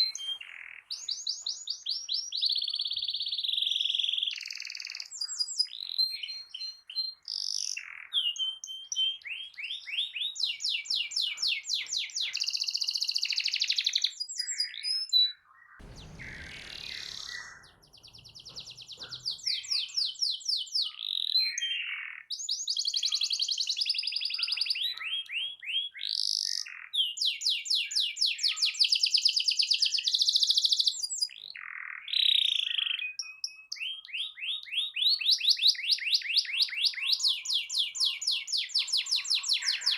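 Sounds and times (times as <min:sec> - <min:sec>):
low muffled noise: 0:15.8 - 0:19.4.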